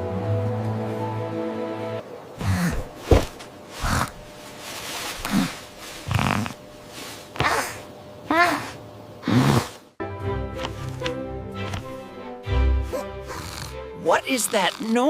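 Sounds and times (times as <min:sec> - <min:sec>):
music: 0:00.0 - 0:02.0, 0:10.0 - 0:14.8
cartoon kitten snoring: 0:03.8 - 0:04.2, 0:05.2 - 0:06.6, 0:07.4 - 0:09.8, 0:12.9 - 0:15.0.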